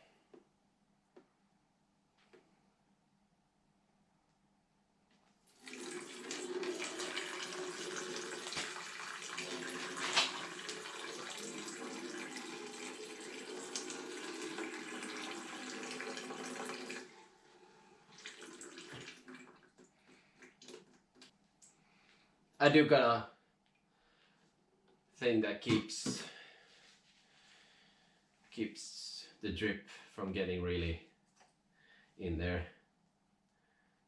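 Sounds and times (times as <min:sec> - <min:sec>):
liquid pouring into container: 0:05.5 - 0:21.0
liquid trickling: 0:05.5 - 0:21.0.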